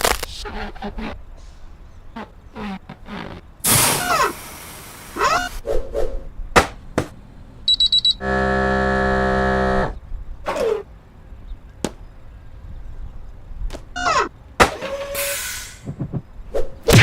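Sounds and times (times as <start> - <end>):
high electronic beeps: 7.7 - 8.2
loud steady buzzer tone: 7.7 - 10.0.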